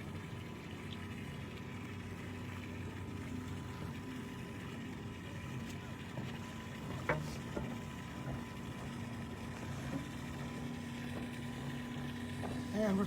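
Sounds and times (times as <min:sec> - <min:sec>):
boat motor humming: 0:00.0 - 0:13.0.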